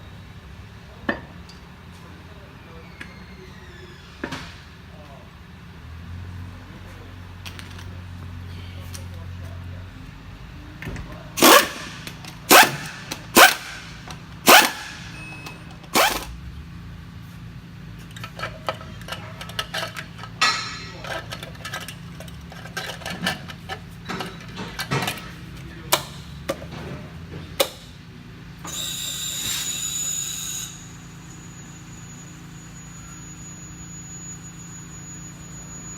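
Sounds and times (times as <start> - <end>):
thin high whine: 28.8 - 35.9.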